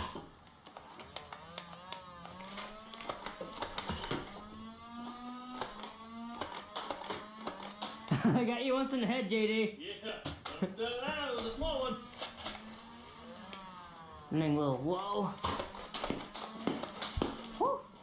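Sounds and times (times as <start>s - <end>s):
toy blasters clicking: 0.0s - 8.1s.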